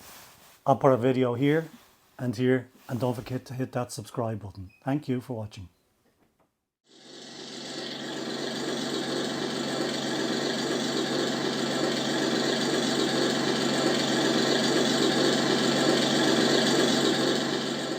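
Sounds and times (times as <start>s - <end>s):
engine-like mechanical hum: 6.9s - 17.9s.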